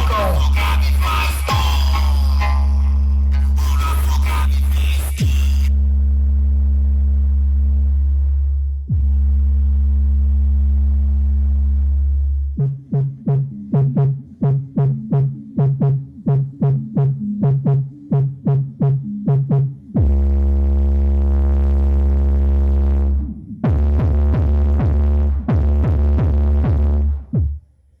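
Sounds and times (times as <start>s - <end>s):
deep bass tone: 0.0s - 27.6s.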